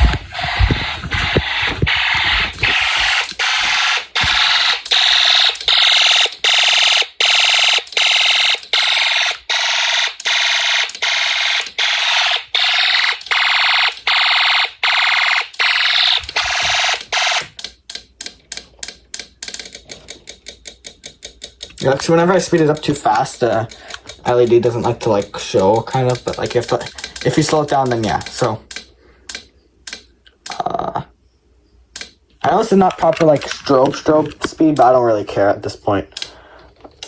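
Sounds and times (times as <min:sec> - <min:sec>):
fire alarm horn pulsing: 0:00.0 - 0:17.6.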